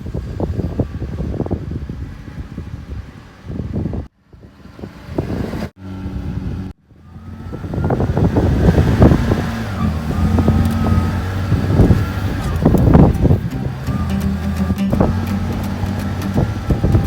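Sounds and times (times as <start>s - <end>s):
wind noise: 0.0s - 17.0s
car engine humming: 5.8s - 17.0s.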